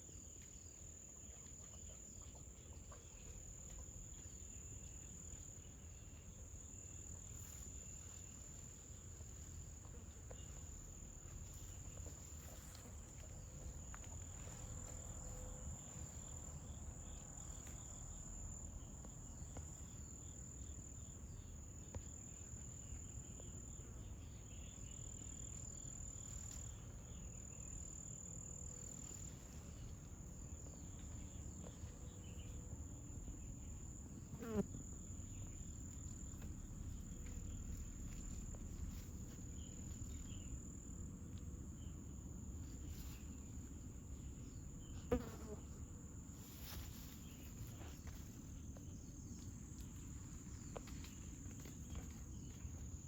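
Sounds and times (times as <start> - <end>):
insects trilling: 0.0 - 53.0
low background rumble: 26.7 - 45.1.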